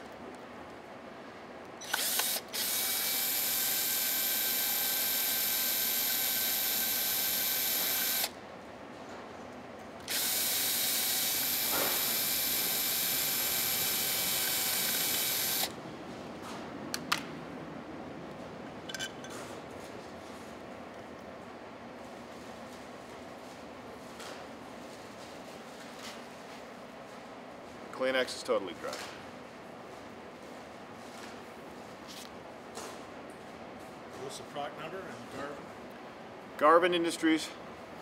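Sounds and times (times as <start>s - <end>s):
power screwdriver running: 1.8s - 8.3s, 10.1s - 15.7s.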